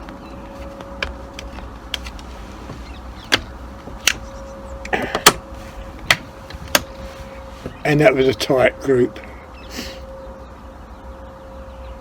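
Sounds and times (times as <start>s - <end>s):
low hum: 0.0s - 12.0s
equipment clicks and knocks: 0.8s - 4.3s, 4.9s - 5.4s, 6.0s - 7.0s.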